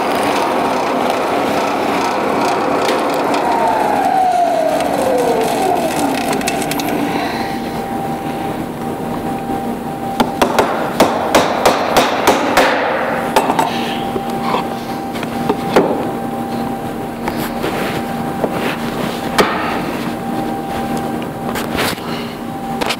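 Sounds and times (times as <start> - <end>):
power tool motor spinning down: 0.0 - 7.7.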